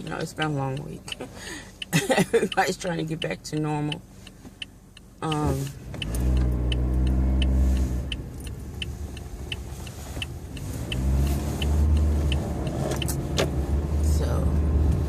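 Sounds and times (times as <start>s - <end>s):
light ticking: 0.0s - 13.3s
car engine accelerating: 4.9s - 15.0s.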